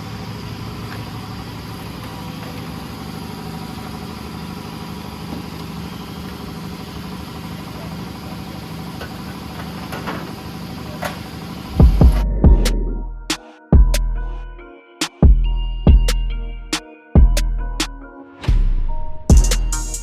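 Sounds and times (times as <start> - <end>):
engine idling: 0.0 - 14.4.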